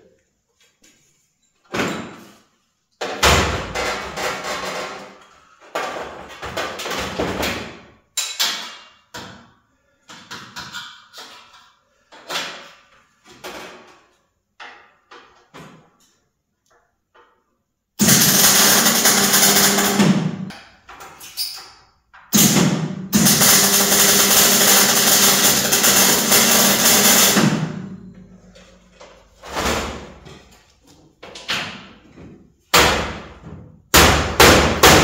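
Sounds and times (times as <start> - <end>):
sheet metal knocks and clangs: 3.0 - 9.5
continuous metal noise: 18.0 - 21.6, 22.3 - 29.7.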